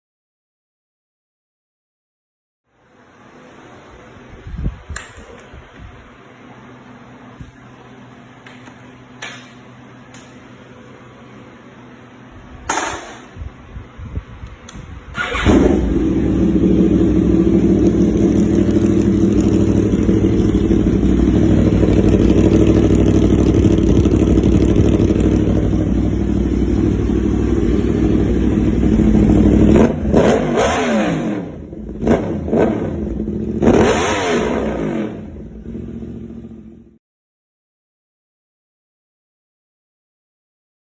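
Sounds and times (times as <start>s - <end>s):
motorcycle engine idling and revving: 15.1s - 37.0s.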